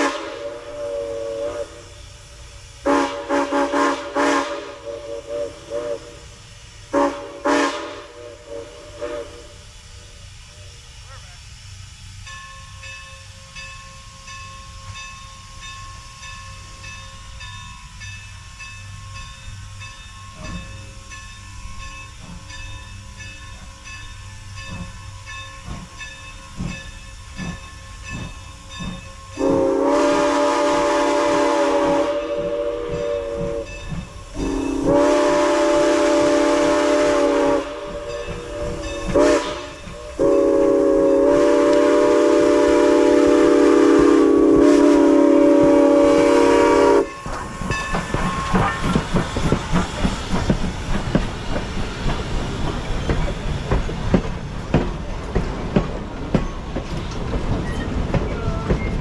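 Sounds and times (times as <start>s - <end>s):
steam whistle blowing: 0.0s - 2.0s, 2.8s - 9.6s, 29.3s - 47.4s
steam locomotive exhaust chuffs: 0.0s - 59.0s.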